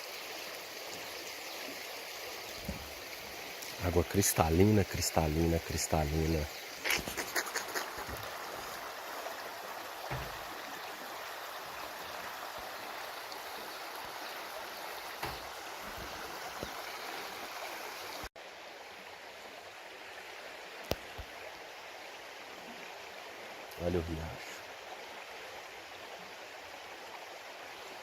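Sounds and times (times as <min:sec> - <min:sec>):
creek rushing over rocks: 0:00.0 - 0:18.3.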